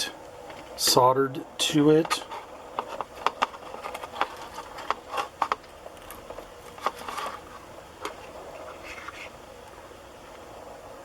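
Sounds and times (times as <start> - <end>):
small hard parts clicking: 2.0 - 8.2.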